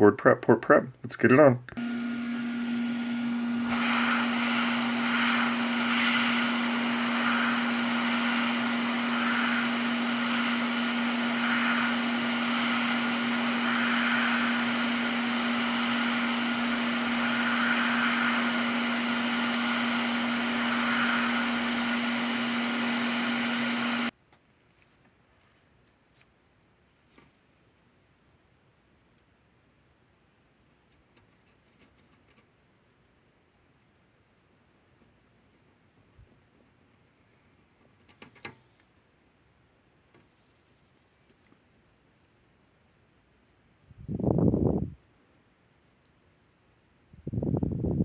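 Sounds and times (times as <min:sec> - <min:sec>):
hot-air station blowing: 0:01.8 - 0:24.1.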